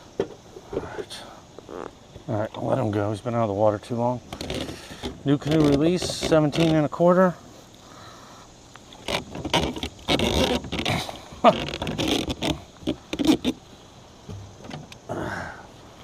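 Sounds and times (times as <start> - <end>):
hands and gear scraping on kayak: 4.3 - 7.0, 8.9 - 13.6.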